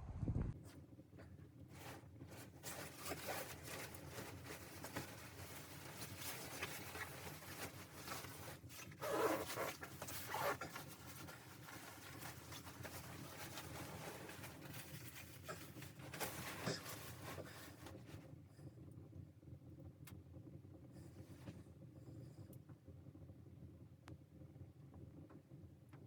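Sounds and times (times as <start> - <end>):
rustling and scraping: 0.6 - 18.3.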